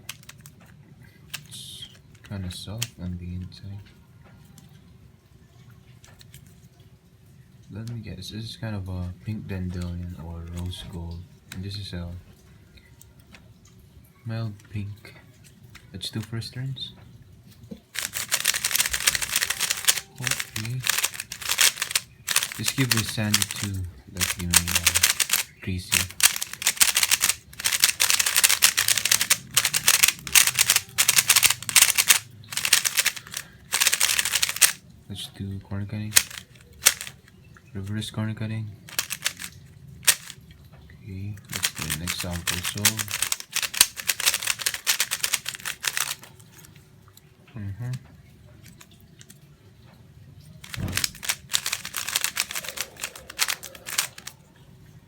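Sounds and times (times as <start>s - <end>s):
plastic puzzle cube clicking: 0.0s - 0.6s, 1.3s - 3.0s, 17.9s - 34.8s, 36.1s - 37.3s, 38.9s - 40.4s, 41.5s - 46.3s, 50.6s - 54.3s
speedcube plastic clacking: 0.0s - 0.6s, 1.3s - 3.0s, 17.9s - 34.8s, 36.1s - 37.3s, 38.9s - 40.4s, 41.4s - 46.2s, 50.6s - 54.3s.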